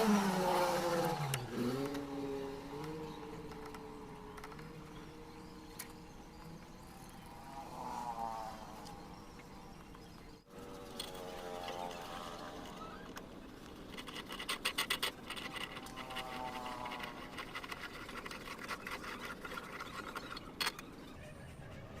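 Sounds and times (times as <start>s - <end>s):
scratching and scraping: 10.6s - 21.2s.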